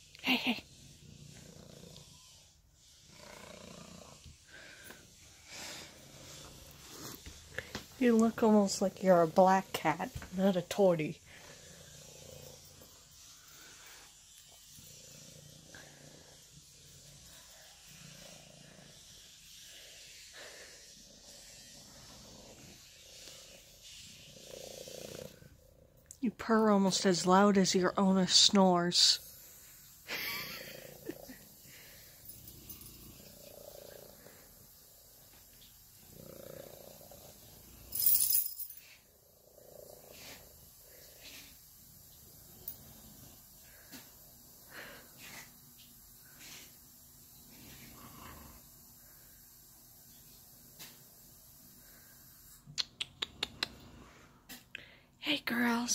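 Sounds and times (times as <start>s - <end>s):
kitten purring: 30.0s - 31.5s, 33.2s - 34.5s, 36.1s - 37.4s
kitten purring loudly: 36.1s - 37.4s.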